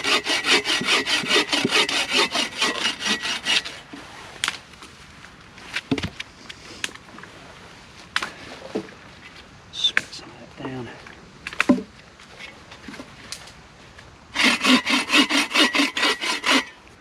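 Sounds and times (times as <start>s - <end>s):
hand saw cutting wood: 0.0s - 3.8s, 14.4s - 16.8s.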